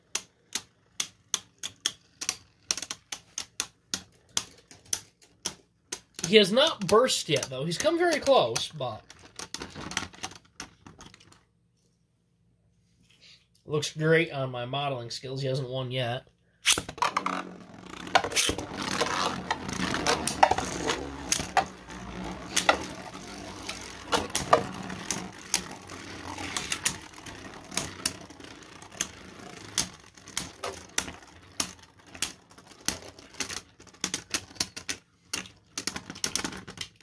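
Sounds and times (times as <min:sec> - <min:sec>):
spinning tops whirring: 0:00.0 - 0:05.4, 0:16.7 - 0:34.9.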